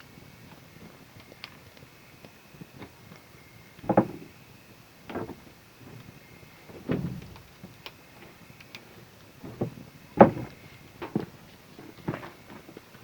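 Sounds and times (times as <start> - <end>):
knocks and thumps: 3.8 - 4.3, 6.7 - 7.5, 9.4 - 11.3.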